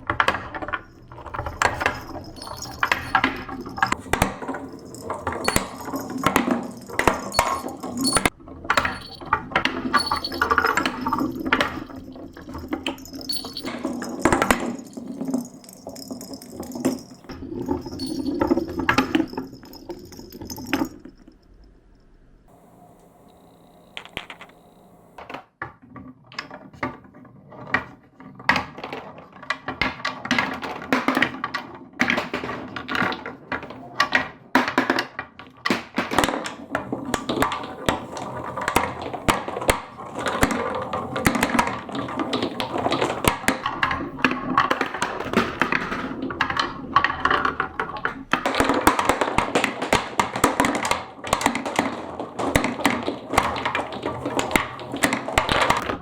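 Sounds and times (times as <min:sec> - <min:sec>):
marbles clattering down a run: 0:00.0 - 0:21.6.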